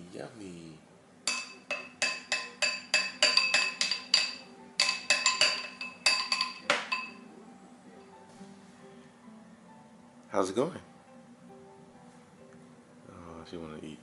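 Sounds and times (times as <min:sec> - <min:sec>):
spoon clinking on bowl: 0:01.3 - 0:07.2.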